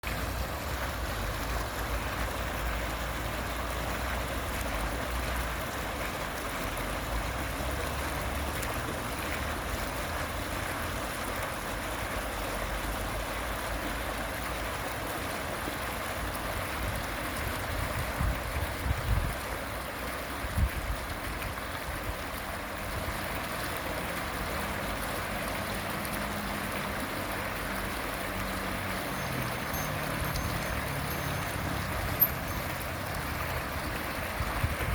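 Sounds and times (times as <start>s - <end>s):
fountain water splashing: 0.0s - 34.9s.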